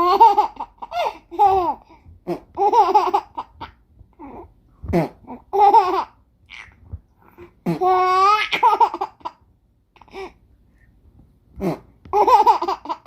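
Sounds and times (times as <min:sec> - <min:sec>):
baby laughing and squealing: 0:05.3 - 0:06.8, 0:07.7 - 0:09.4.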